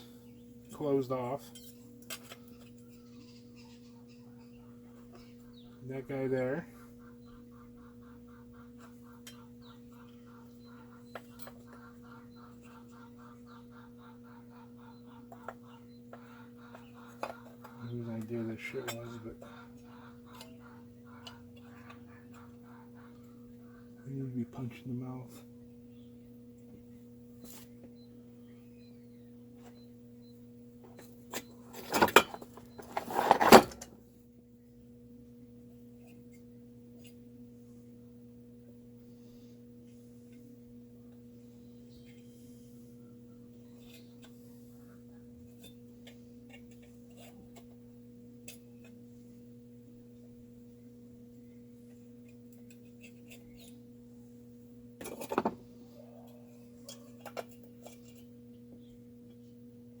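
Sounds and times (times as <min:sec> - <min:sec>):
steady low hum: 0:00.0 - 1:00.0
chainsaw parts and tools clattering: 0:31.3 - 0:34.0, 0:55.0 - 0:55.6.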